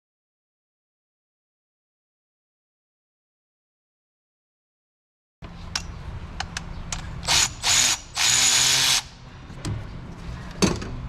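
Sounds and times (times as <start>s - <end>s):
ratchet wrench rasping: 7.2s - 9.1s.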